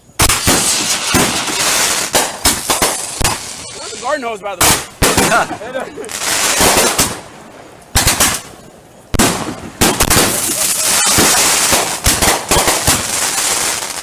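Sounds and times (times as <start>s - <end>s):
fireworks bangs and crackling: 0.0s - 14.0s.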